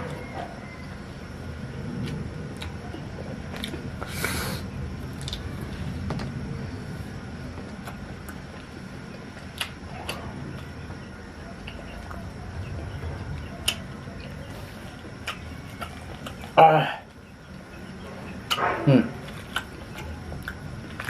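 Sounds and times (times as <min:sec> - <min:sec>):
low background rumble: 0:00.0 - 0:21.0
person chewing meat: 0:02.0 - 0:04.4, 0:07.5 - 0:10.8, 0:13.4 - 0:17.2, 0:18.4 - 0:21.0.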